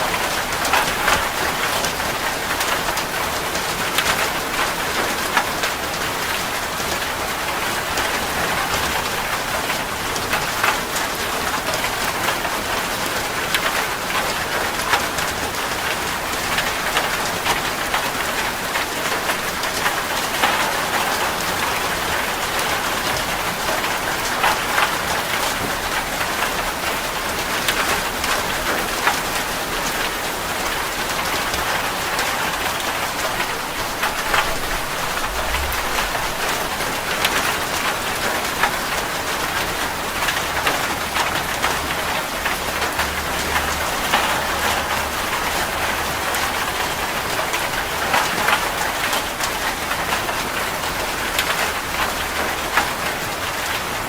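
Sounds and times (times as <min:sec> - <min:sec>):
heavy rain on a metal roof: 0:00.0 - 0:54.0
faint low rumble: 0:34.4 - 0:37.1.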